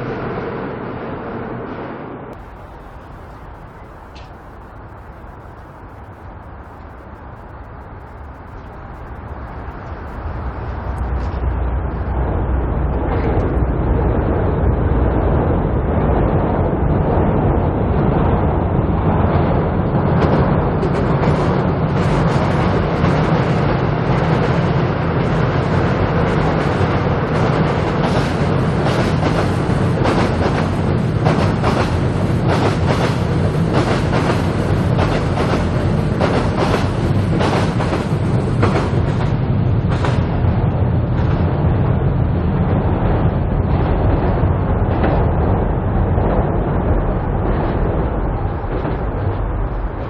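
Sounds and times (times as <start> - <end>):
steady low rumble: 0.0 - 50.0
train wheels clacking on rail joints: 19.3 - 41.5.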